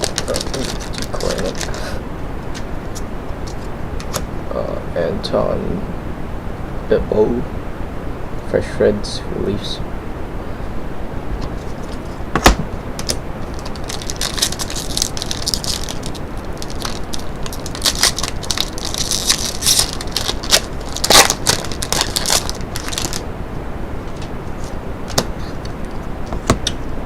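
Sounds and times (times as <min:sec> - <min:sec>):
foil wrapper crinkling: 0:00.0 - 0:01.9, 0:13.0 - 0:23.2.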